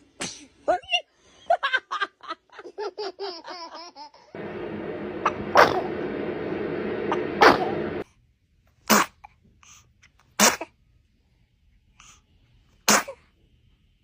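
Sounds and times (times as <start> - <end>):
baby sneezing: 0.0 - 0.6, 8.9 - 9.3, 10.4 - 10.7, 12.8 - 13.3
baby giggling: 2.6 - 4.3
steady background hum: 4.4 - 8.0.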